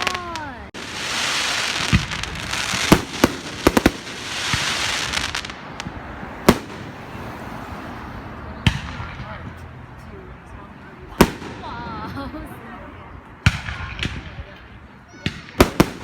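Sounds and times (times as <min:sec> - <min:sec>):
fireworks crackling hiss: 0:00.0 - 0:07.7
fireworks sharp bangs: 0:00.0 - 0:07.8, 0:08.6 - 0:09.6, 0:11.1 - 0:12.0, 0:13.4 - 0:14.6, 0:15.2 - 0:16.0.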